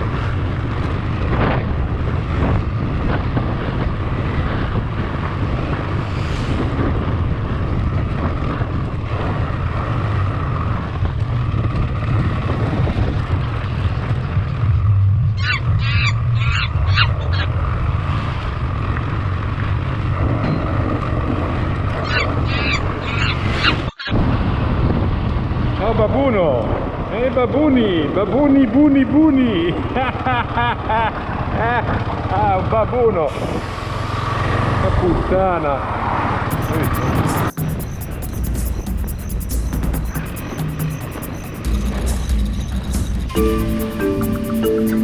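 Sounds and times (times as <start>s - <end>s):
wind noise on microphone: 0.0s - 27.2s, 33.3s - 35.3s, 36.0s - 45.0s
motorcycle engine running: 36.5s - 45.0s
sharp high calls: 36.5s - 45.0s.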